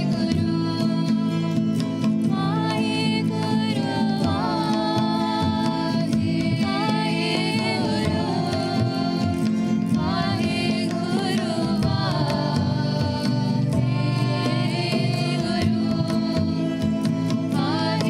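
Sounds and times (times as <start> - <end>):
person singing devotional melody: 0.0 - 18.0
drum beat: 4.2 - 18.0.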